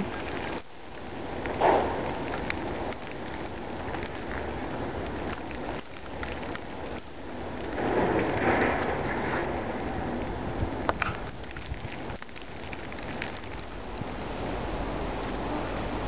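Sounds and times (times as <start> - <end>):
wind blowing: 0.0 - 16.0.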